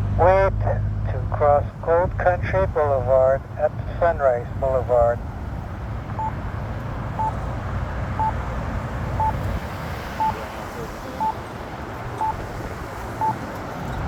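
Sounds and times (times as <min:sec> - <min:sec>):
low background rumble: 0:00.0 - 0:09.4
pedestrian signal beeps: 0:06.2 - 0:06.4, 0:08.2 - 0:08.4, 0:09.2 - 0:09.4, 0:10.2 - 0:11.5, 0:12.2 - 0:12.4, 0:13.2 - 0:13.5.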